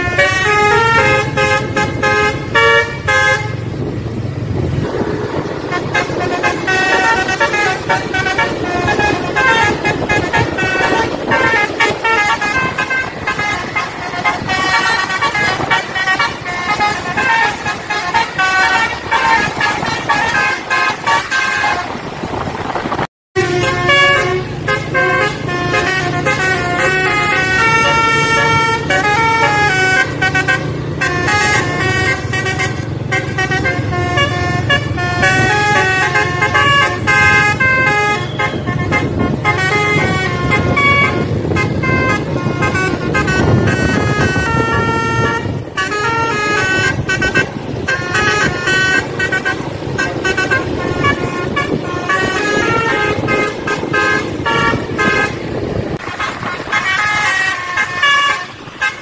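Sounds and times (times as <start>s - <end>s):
bus musical horn melody: 0.0s - 22.3s, 23.4s - 59.0s.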